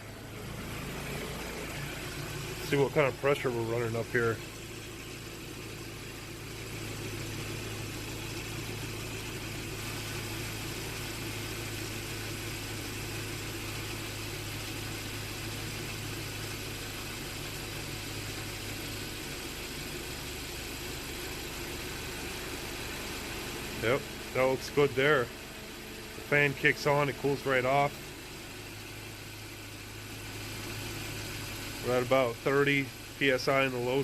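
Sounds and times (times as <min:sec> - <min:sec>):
steady low hum: 0:00.0 - 0:20.2
car engine idling: 0:00.0 - 0:34.0.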